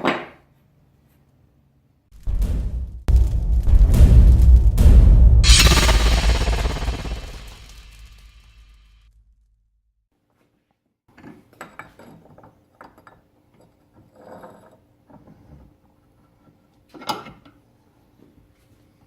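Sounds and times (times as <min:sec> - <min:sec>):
sharp metal clank: 0:05.4 - 0:08.7.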